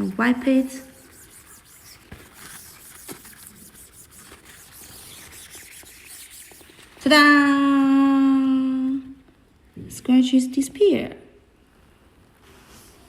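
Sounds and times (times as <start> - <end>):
damp tissue rubbing on film: 0.6 - 7.2.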